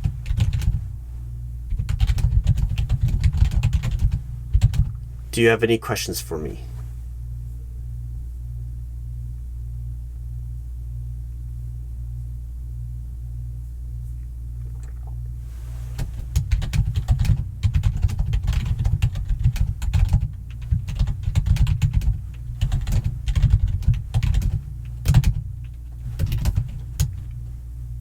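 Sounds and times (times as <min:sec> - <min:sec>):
fast typing on keyboard: 0:00.0 - 0:00.8, 0:01.7 - 0:05.0, 0:16.0 - 0:25.5, 0:26.2 - 0:27.2
steady low hum: 0:00.0 - 0:28.0.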